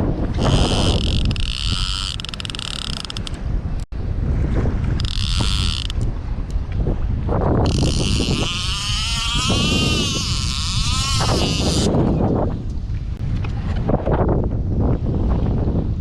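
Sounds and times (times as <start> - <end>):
wind buffeting microphone: 0.0 - 16.0
fishing reel whirring: 0.4 - 3.4, 5.0 - 6.1, 7.6 - 12.0.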